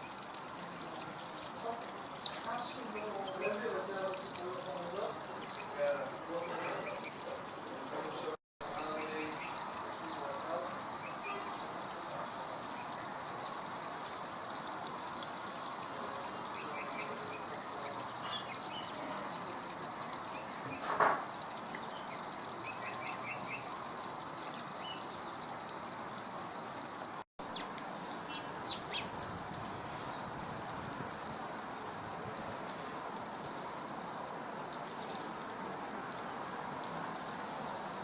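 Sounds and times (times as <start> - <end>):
small birds chirping: 1.2 - 26.2, 27.4 - 29.2.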